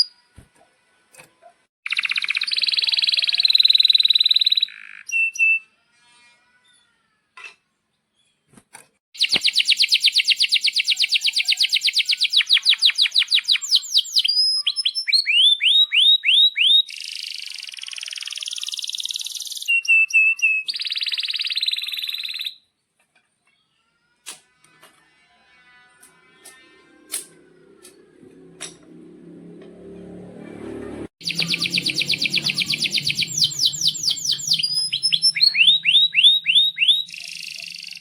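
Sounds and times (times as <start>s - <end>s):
canary singing: 1.8s - 5.8s, 9.2s - 22.7s, 31.2s - 38.0s.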